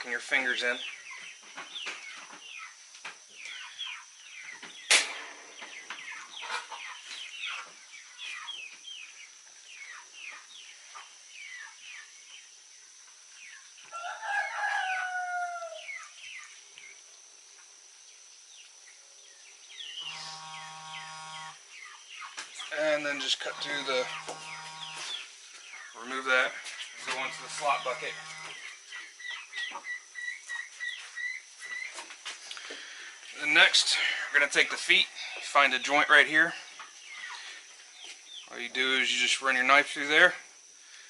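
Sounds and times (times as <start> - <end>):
chickens chirping and clucking: 0.3 - 12.1, 20.0 - 32.6, 35.6 - 39.0
sharp knock: 4.9 - 6.0
rooster crowing: 13.9 - 16.0, 23.4 - 25.1.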